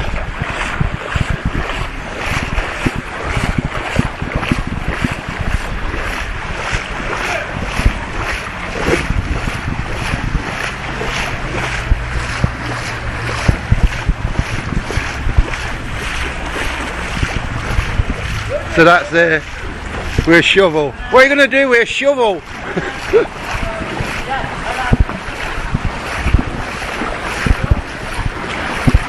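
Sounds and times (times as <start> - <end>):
footsteps splashing through water: 0.0 - 29.0
wind buffeting microphone: 0.0 - 29.0
heavy rain: 6.5 - 29.0.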